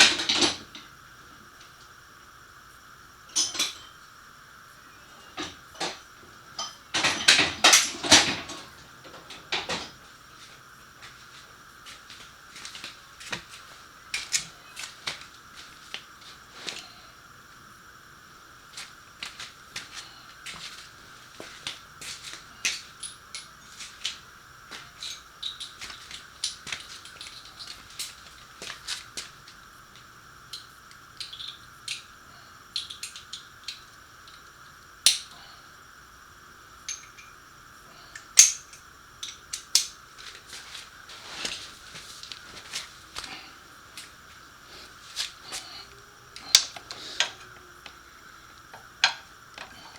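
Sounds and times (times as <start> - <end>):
hand tools clicking and tapping: 21.4 - 29.3, 38.2 - 40.6, 45.1 - 48.0, 48.6 - 49.9.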